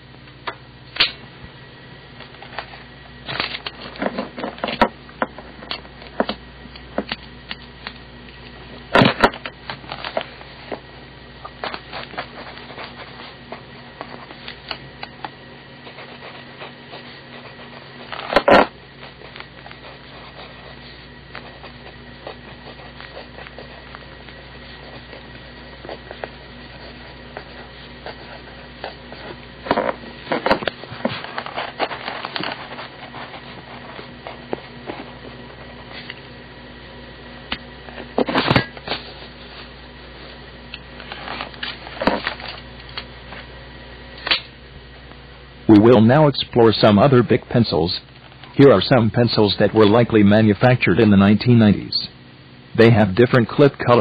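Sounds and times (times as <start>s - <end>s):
steady low hum: 0.0s - 54.0s
pencil scratching on paper: 11.5s - 14.7s, 15.6s - 35.7s.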